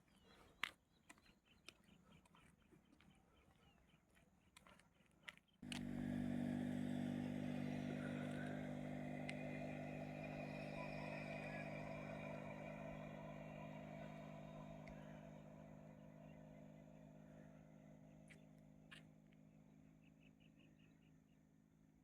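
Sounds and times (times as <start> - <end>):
vehicle engine receding: 5.6 - 20.0.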